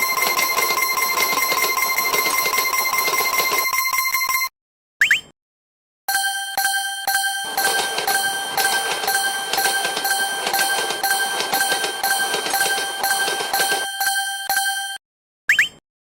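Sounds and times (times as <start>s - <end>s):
level crossing bell ringing: 0.0s - 4.5s, 6.1s - 15.0s.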